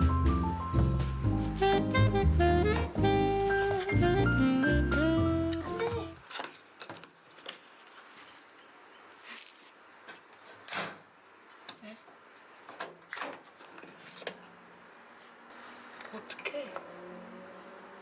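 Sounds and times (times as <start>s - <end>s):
low room noise: 0.0s - 18.0s.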